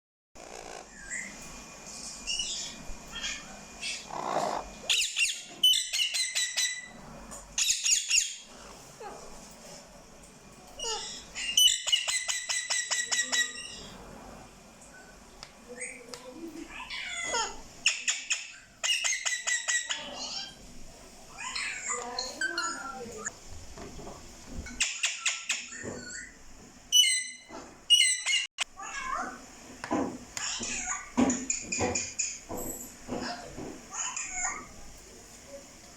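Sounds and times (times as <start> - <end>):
parrot chatter: 2.3 - 9.3, 10.8 - 14.1, 15.7 - 20.6, 21.3 - 23.3, 30.4 - 32.5, 33.1 - 34.8
parrot shrill calls: 10.8 - 13.9, 24.8 - 29.2.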